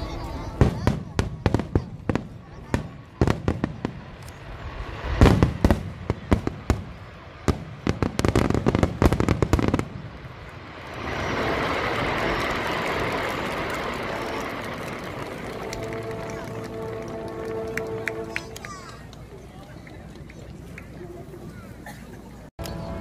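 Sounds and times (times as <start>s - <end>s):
fireworks bangs: 0.2s - 19.1s
dense rushing sound: 3.8s - 18.4s.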